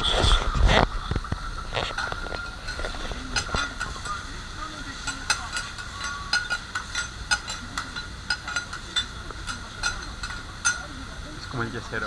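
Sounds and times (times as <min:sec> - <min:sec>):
metal spatulas scraping griddle: 0:01.7 - 0:10.8.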